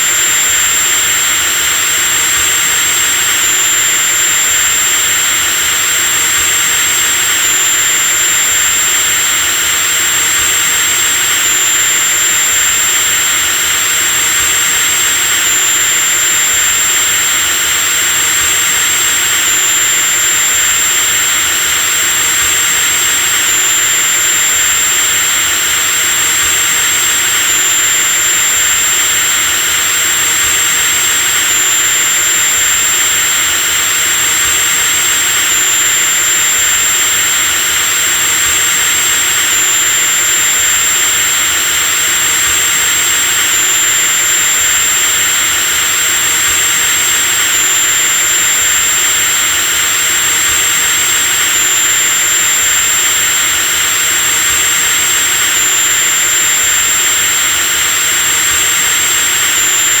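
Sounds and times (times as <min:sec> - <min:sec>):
electric drill whining: 0:00.0 - 1:00.0.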